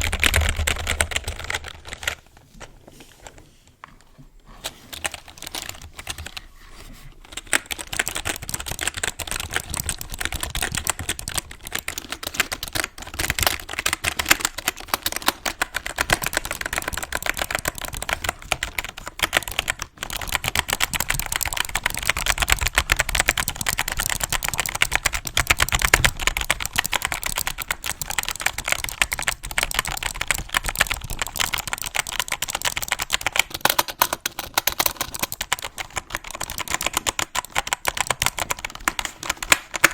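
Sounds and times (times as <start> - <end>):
computer keyboard typing: 0.0 - 2.2, 4.7 - 6.5, 7.2 - 39.9.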